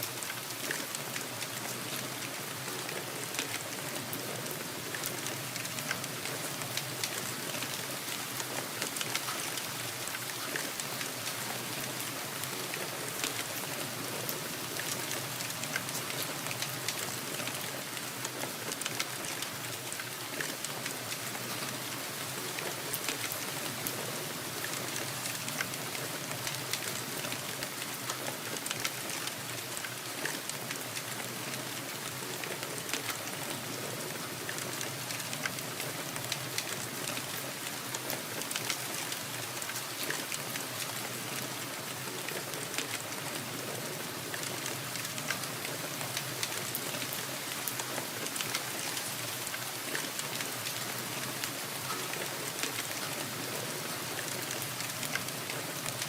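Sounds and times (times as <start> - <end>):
steady rain: 0.0 - 56.0
rain drop hits: 34.4 - 56.0.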